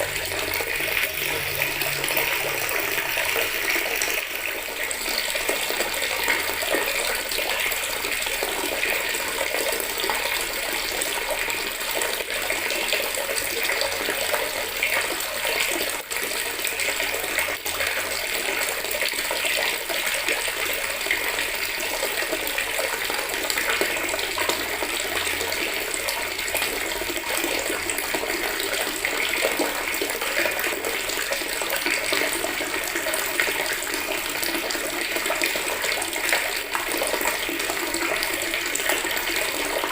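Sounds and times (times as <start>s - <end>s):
tap water splashing into bucket: 0.0s - 39.9s.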